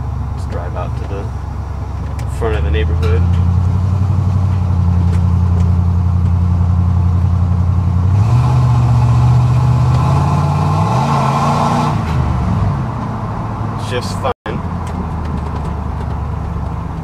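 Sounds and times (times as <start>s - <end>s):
pickup engine accelerating: 0.0s - 17.0s
road noise: 0.0s - 17.0s.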